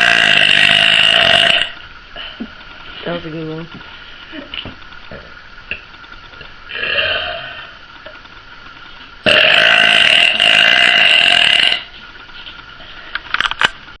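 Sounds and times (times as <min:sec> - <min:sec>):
woman belching loudly: 0:00.0 - 0:01.8, 0:09.3 - 0:11.9.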